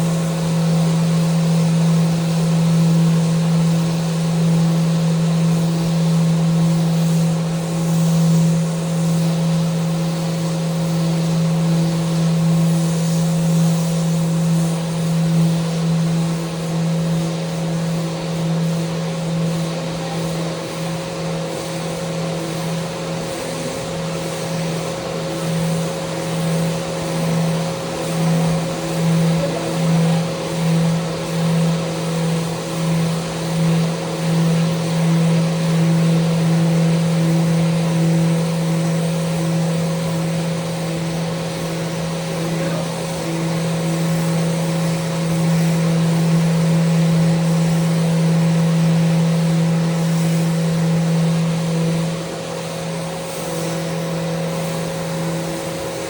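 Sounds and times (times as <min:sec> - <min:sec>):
electric sander running: 0:22.5 - 0:52.6.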